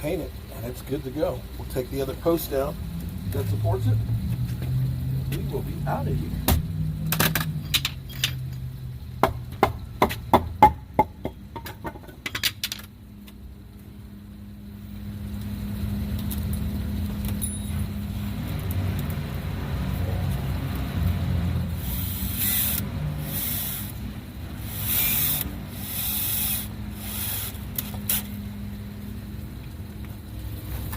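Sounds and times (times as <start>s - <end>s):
low steady rumble: 0.0s - 12.2s, 12.9s - 30.9s
wooden support knocks and clatters: 9.2s - 12.4s
short hissing bursts: 21.8s - 28.4s.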